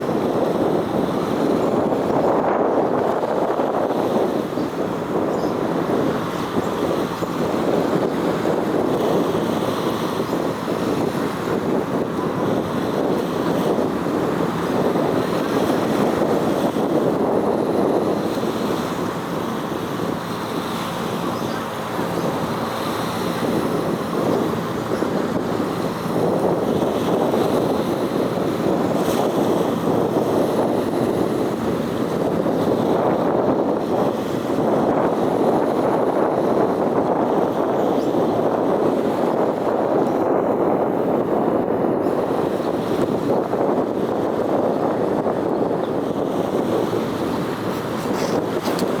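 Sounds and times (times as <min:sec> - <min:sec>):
wind on microphone: 0:00.0 - 0:49.0
water washing: 0:43.9 - 0:49.0.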